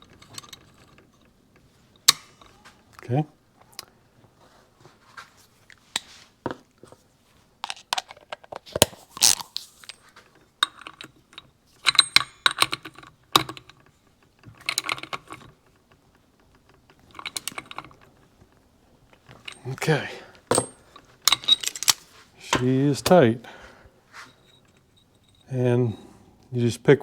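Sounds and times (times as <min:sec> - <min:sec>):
hand tools clinking on metal: 0:00.0 - 0:03.2, 0:09.8 - 0:26.1.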